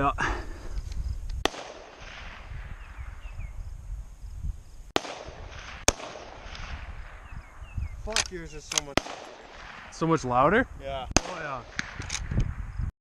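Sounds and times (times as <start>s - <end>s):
rifle shots: 1.4s - 3.2s, 5.0s - 10.4s, 11.1s - 12.4s
gunshot echo: 1.4s - 3.3s, 5.0s - 7.5s, 8.1s - 10.4s, 11.1s - 12.6s.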